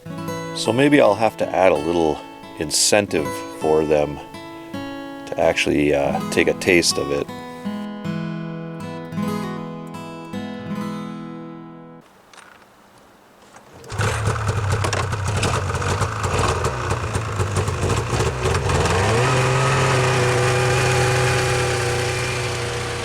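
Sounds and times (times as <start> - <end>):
small engine running unevenly: 13.7 - 23.0.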